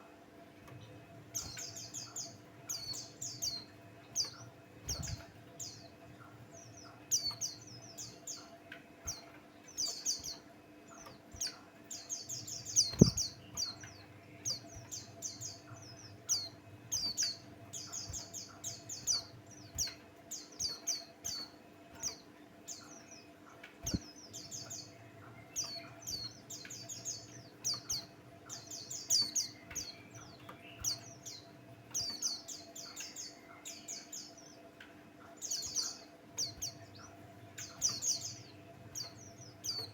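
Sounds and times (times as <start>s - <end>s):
faint steady hum: 0.0s - 39.9s
bird twittering: 12.5s - 13.9s, 23.8s - 24.9s
dull thumps: 12.9s - 13.3s.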